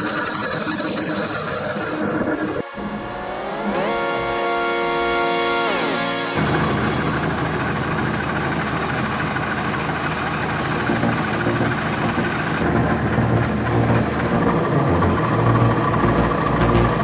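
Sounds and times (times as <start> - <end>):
motor humming with noisy hiss: 6.4 - 12.6.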